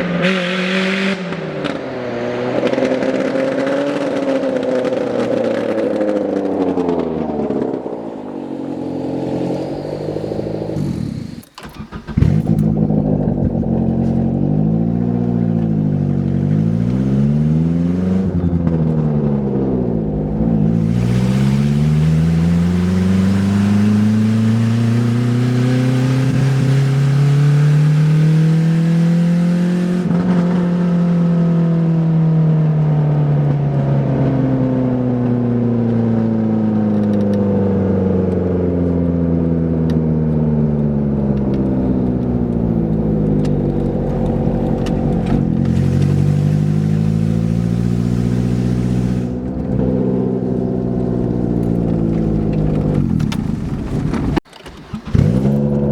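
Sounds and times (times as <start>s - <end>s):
car engine revving: 0.0s - 32.5s, 33.5s - 55.9s.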